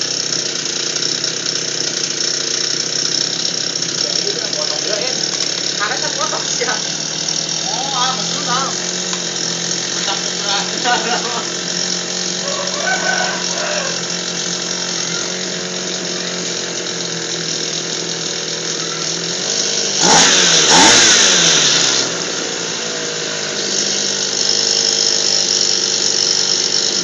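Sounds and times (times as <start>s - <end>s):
small engine idling and revving: 0.0s - 27.0s.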